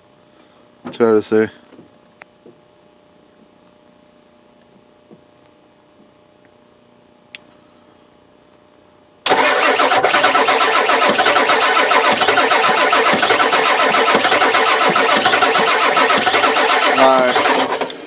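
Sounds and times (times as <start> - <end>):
diesel engine cranking: 9.3 - 18.0.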